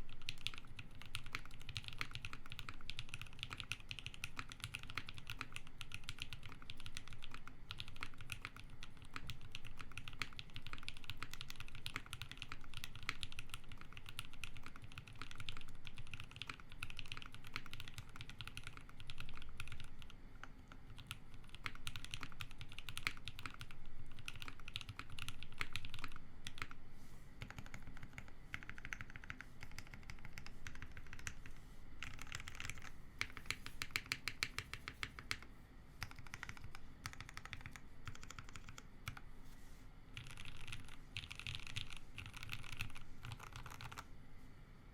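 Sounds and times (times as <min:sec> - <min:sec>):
mechanical keyboard typing: 0:00.0 - 0:26.8, 0:27.4 - 0:35.4, 0:36.0 - 0:39.2, 0:40.2 - 0:44.1.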